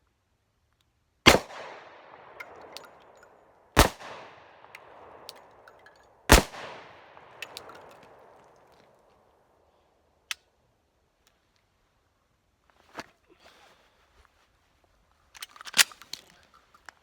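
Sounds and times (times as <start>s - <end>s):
pistol shots echoing: 1.3s - 3.1s, 3.8s - 5.6s, 6.3s - 8.5s.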